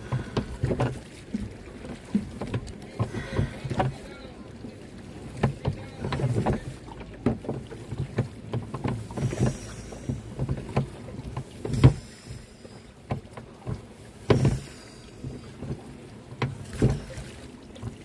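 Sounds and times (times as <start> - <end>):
paddle knocking on canoe: 0.0 - 18.0.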